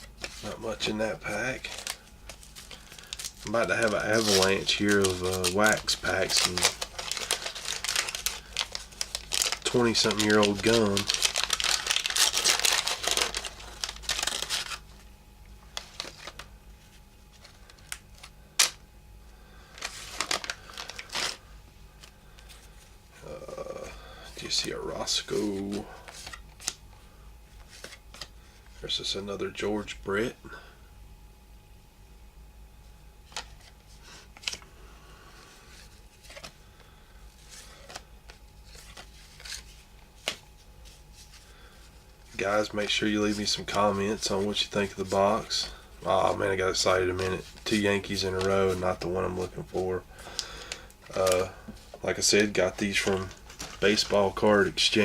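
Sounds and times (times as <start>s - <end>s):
cards rustling: 0.0s - 15.1s, 15.7s - 18.8s, 19.5s - 28.9s, 33.2s - 34.7s, 35.4s - 55.0s
wax paper wrapper crinkling and tearing: 0.0s - 15.1s, 15.7s - 16.5s, 19.6s - 26.8s, 35.7s - 55.0s.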